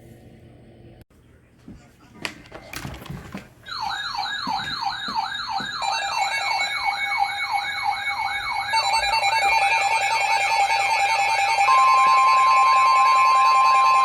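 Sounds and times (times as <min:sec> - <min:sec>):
steady alarm tones: 0:03.6 - 0:14.0
falling wail of alert siren: 0:03.7 - 0:14.0.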